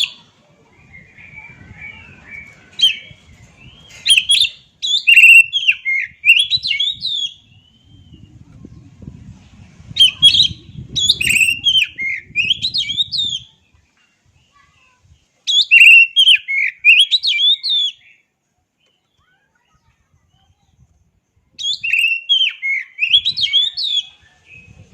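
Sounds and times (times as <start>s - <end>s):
bird singing whistled phrases: 0.8s - 8.4s, 10.0s - 13.7s, 15.5s - 18.2s, 21.6s - 24.8s
faint low rumble: 7.4s - 12.0s.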